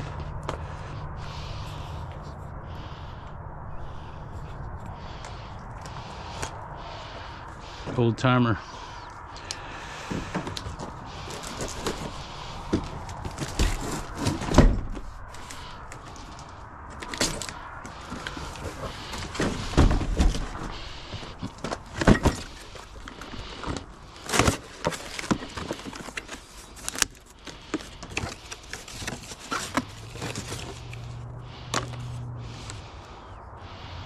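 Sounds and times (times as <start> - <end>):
low steady hum: 0.0 - 33.8
tools and parts clattering: 10.1 - 32.8.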